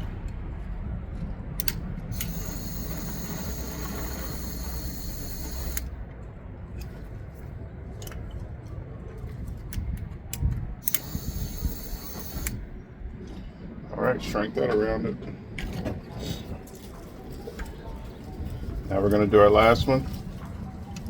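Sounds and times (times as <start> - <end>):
light handling clicks: 1.6 - 6.0, 9.7 - 12.6
torch flame hissing: 2.1 - 5.9, 10.8 - 12.6.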